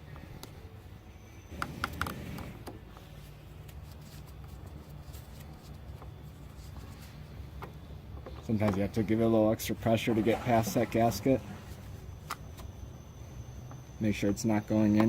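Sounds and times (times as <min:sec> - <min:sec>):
steady low hum: 0:00.0 - 0:15.0
small clicks and rustling of hands: 0:02.9 - 0:08.8.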